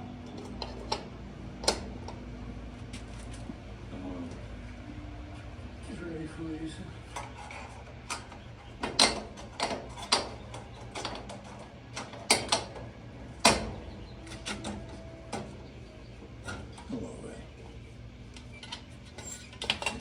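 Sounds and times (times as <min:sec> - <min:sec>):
sharp clicks and knocks: 0:07.2 - 0:15.5.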